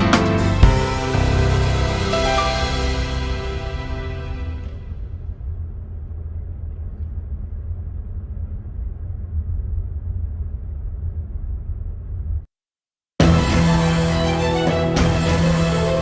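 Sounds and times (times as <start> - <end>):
background music: 0.0 - 5.0, 13.2 - 16.0.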